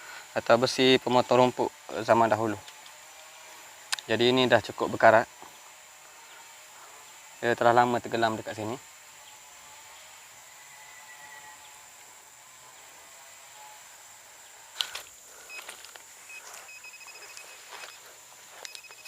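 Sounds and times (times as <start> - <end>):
insects droning: 0.0 - 19.0
scattered clicks: 18.6 - 19.0.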